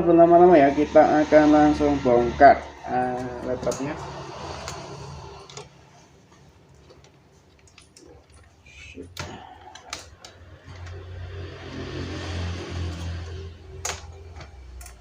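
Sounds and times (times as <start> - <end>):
laptop and tools clicking: 3.2 - 15.0.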